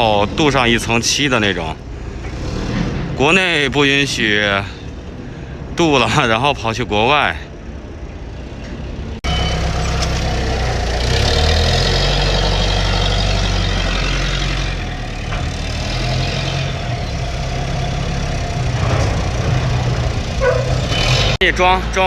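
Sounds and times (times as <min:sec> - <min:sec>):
forklift engine whining: 0:08.0 - 0:21.4.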